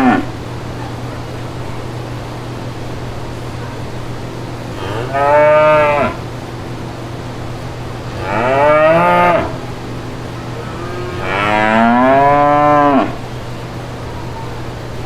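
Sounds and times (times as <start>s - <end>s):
cow mooing: 0.0s - 0.3s, 4.8s - 6.2s, 8.1s - 9.6s, 10.5s - 13.2s
low hum and hiss: 0.0s - 15.0s.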